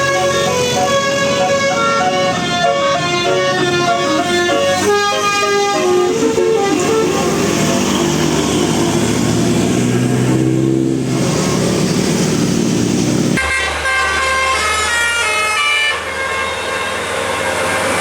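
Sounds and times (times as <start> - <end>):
musical bus horn tunes: 0.0 - 9.0, 13.4 - 17.8
engine and road noise: 0.0 - 18.0.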